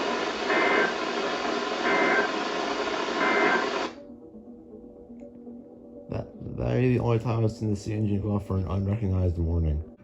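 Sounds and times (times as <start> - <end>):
weather radio broadcast: 0.0 - 3.9
heavy radio static: 0.0 - 4.0
two-tone digital data bursts: 0.4 - 3.9.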